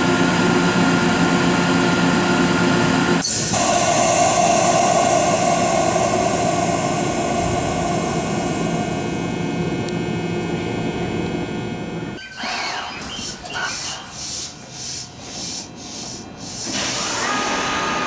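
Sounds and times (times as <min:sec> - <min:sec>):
air compressor humming: 0:00.8 - 0:12.2.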